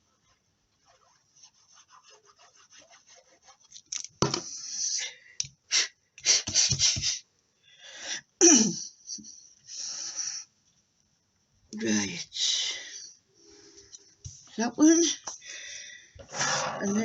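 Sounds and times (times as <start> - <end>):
paper scratching: 0.2 - 3.9.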